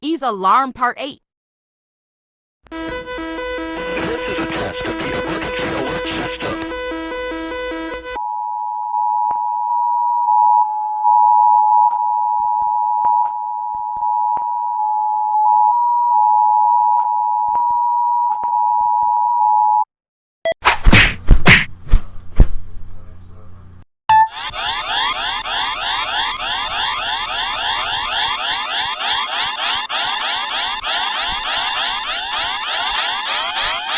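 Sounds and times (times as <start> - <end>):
two-tone alarm: 2.7 - 19.4, 24.1 - 33.9.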